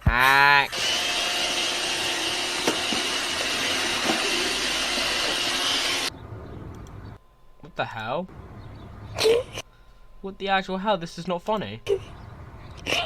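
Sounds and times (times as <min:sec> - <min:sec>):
motor whooshing with high whine: 0:00.7 - 0:07.2.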